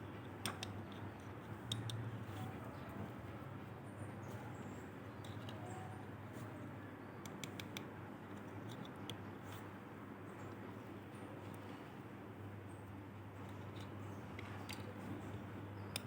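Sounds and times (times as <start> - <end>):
plastic toy figures clicking: 0.4 - 2.0, 7.2 - 9.2.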